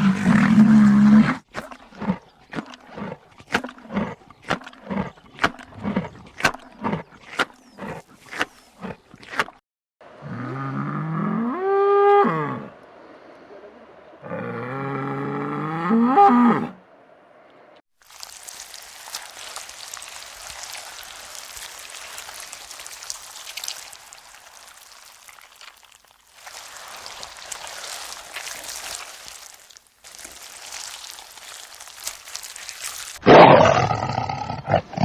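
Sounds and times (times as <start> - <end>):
cow mooing: 14.2 - 16.8.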